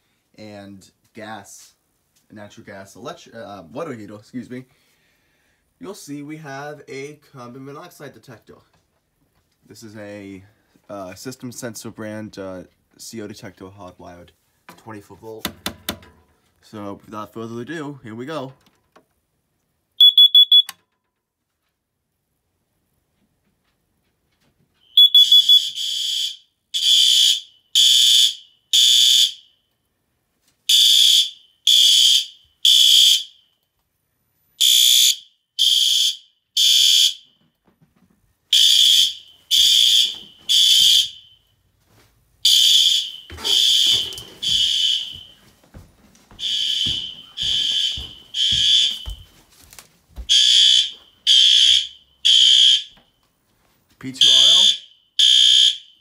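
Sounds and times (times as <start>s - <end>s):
fire alarm horn blasts: 20.0s - 20.8s, 24.9s - 29.6s, 30.7s - 33.6s, 34.6s - 37.4s, 38.5s - 41.6s, 42.4s - 45.4s, 46.4s - 49.4s, 50.3s - 53.0s, 54.2s - 56.0s.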